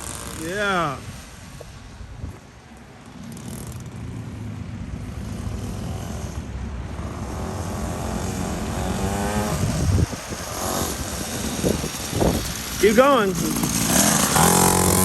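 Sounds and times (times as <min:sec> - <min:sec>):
dirt bike engine running: 0:07.8 - 0:15.0.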